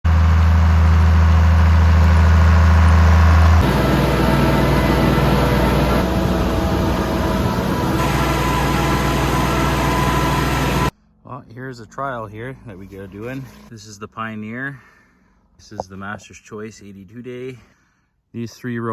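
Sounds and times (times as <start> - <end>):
vehicle engine running: 0.1 - 10.9.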